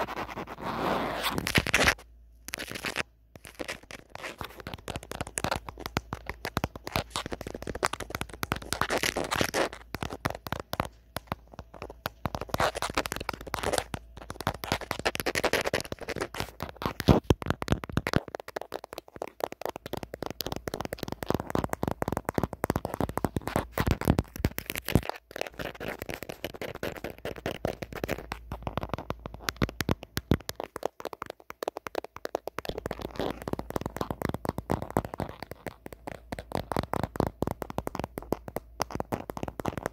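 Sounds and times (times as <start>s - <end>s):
fingernails tapping on phone: 4.4s - 24.7s.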